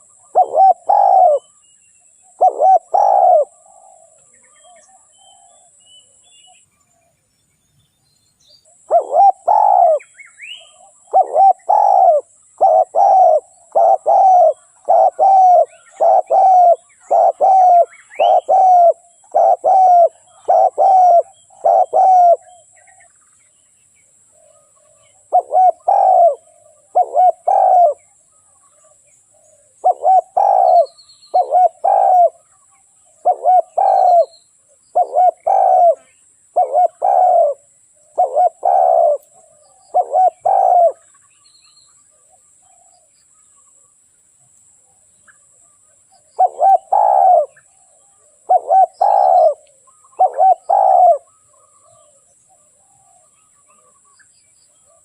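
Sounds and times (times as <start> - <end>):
dove cooing: 0.0 - 1.6, 2.2 - 5.8, 8.7 - 23.0, 24.4 - 28.2, 28.8 - 41.1, 46.3 - 54.1.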